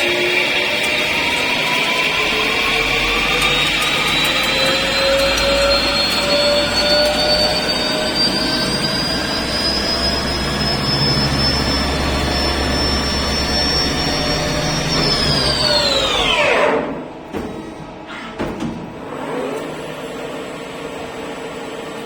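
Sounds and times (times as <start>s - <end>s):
machine spindle whining: 0.0s - 18.4s.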